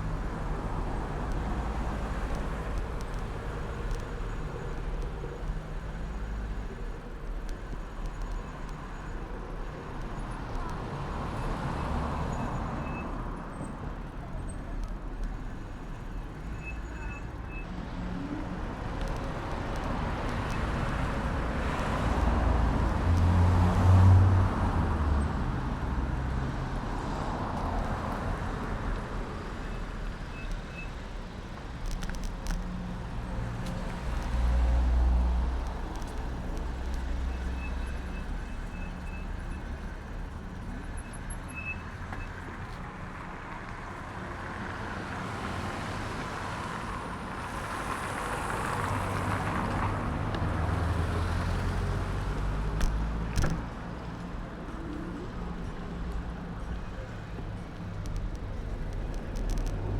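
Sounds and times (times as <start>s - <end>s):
cars driving past: 17.5s - 28.9s, 44.4s - 59.9s.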